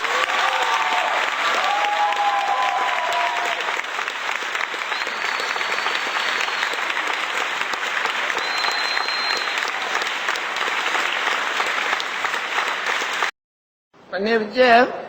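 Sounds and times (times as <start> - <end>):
large crowd applauding: 0.0 - 13.3
high whistle: 4.8 - 7.0, 8.4 - 9.8.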